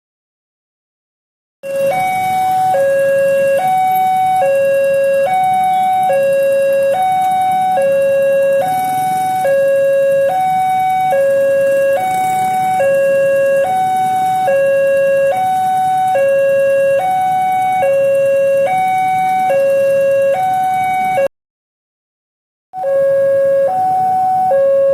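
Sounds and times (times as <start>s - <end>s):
two-tone crossing alarm: 1.6s - 21.3s, 22.8s - 24.9s.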